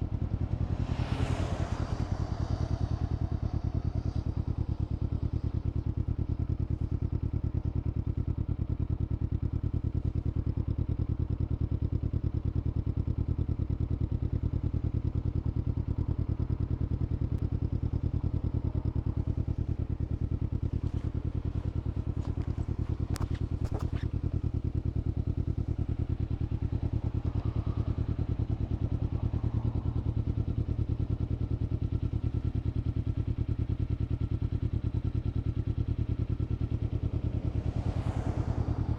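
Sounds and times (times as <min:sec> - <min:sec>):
motorcycle engine running: 0:00.0 - 0:38.9.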